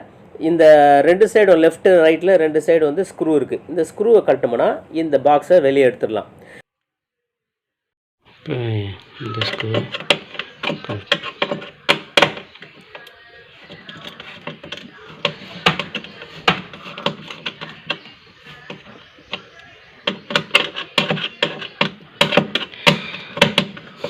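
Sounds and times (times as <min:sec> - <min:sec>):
screwdriver clicking on screws: 0:09.3 - 0:19.4.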